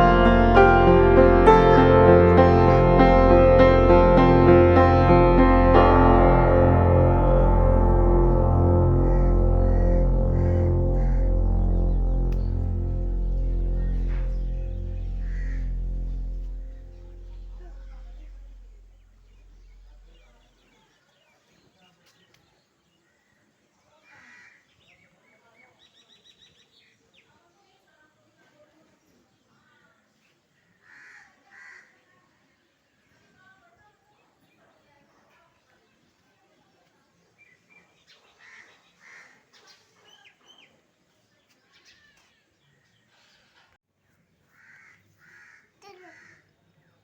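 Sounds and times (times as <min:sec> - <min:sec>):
low hum: 0:00.0 - 0:20.6.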